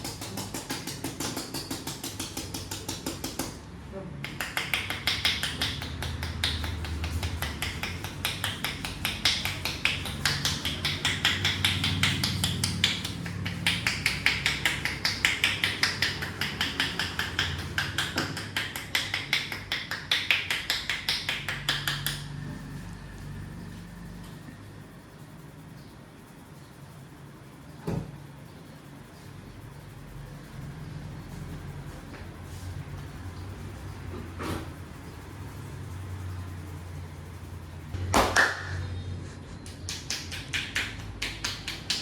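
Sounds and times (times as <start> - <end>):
hands slapping a head: 0.0 - 3.6, 4.2 - 22.2, 38.1 - 38.8, 39.6 - 42.0.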